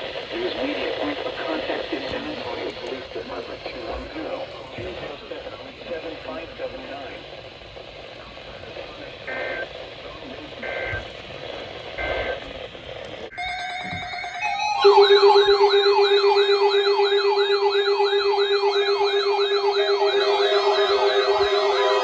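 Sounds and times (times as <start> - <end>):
squawking data bursts: 13.3 - 22.0
warbling electronic siren: 13.3 - 22.0.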